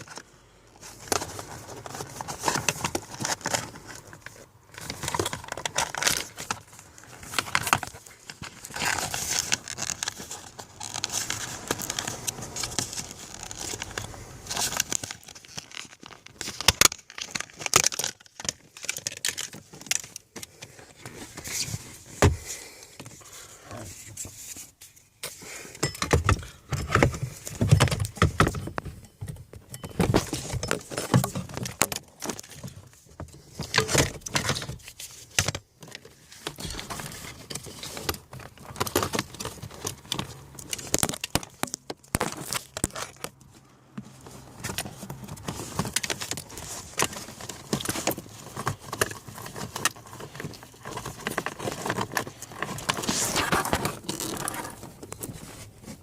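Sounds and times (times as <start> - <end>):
small hard objects clattering: 1.0 - 20.4, 36.3 - 43.4.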